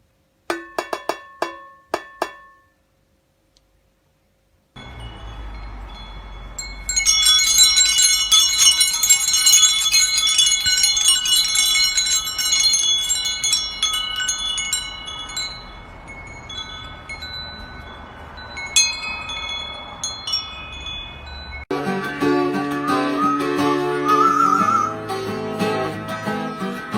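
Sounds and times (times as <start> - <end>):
chimes tinkling: 4.8 - 21.8.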